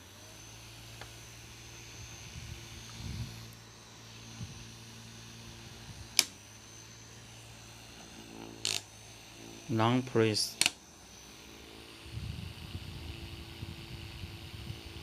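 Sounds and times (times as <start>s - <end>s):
fan motor hum and whir: 0.0s - 15.0s
sharp click: 6.2s - 6.4s, 10.5s - 10.8s.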